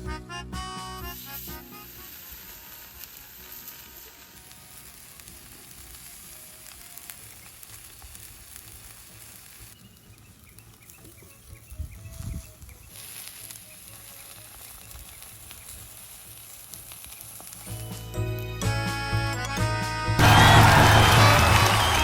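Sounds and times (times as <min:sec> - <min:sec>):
food sizzling: 0:01.0 - 0:18.9, 0:20.2 - 0:22.0.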